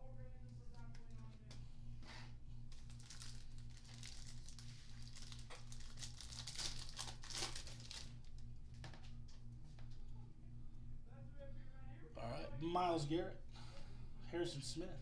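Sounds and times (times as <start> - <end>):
foil wrapper crinkling and tearing: 2.7 - 9.1.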